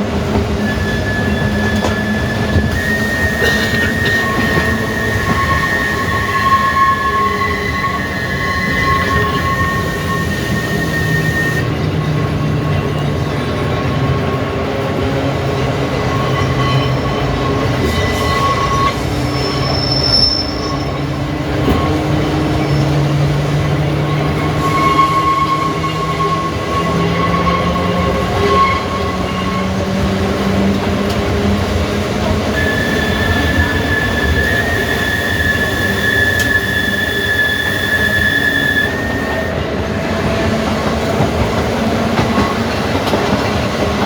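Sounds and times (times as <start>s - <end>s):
tram wheels rumbling: 0.0s - 44.0s
high wheel squeal: 0.4s - 12.2s, 15.8s - 30.9s, 32.4s - 39.9s.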